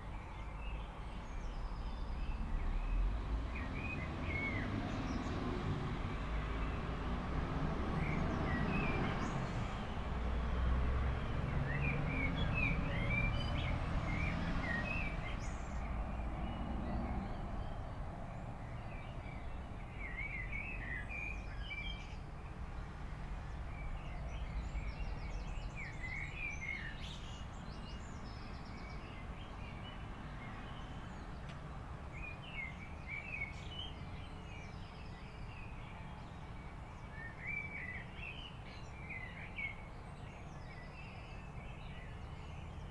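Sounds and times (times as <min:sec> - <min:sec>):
small birds chirping: 0:11.1 - 0:42.9.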